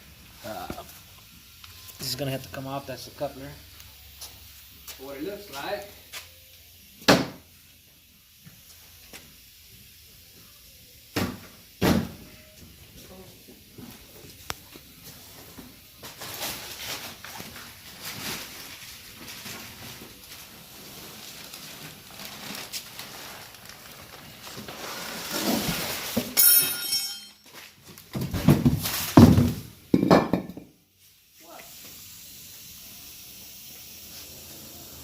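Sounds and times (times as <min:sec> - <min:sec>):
high ringing scrape: 0:26.4 - 0:27.6.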